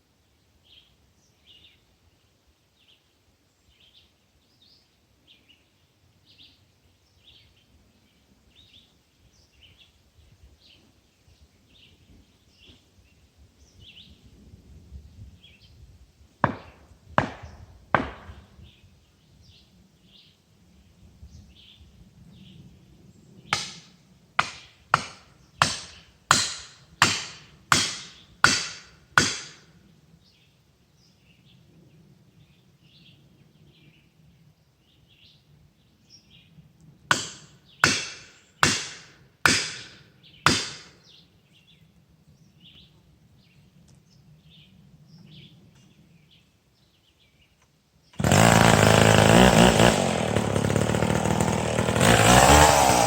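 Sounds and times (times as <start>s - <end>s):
hand tool striking wood: 16.4s - 18.4s, 23.6s - 29.6s, 37.1s - 41.0s.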